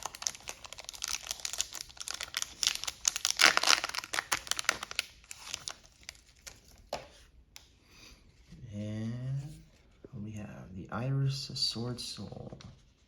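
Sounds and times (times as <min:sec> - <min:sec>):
foil wrapper crinkling: 0:00.0 - 0:06.9.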